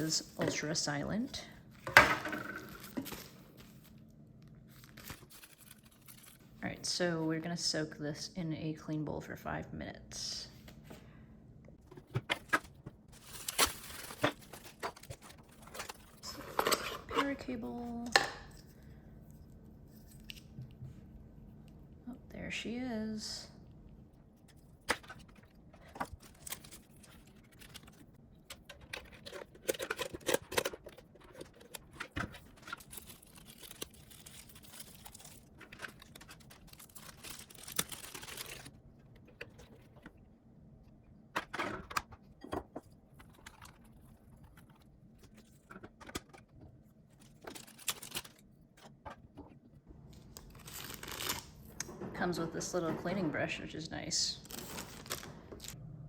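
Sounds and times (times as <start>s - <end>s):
plastic parts clicking and clattering: 11.8s - 17.4s, 24.5s - 40.2s, 41.3s - 49.6s.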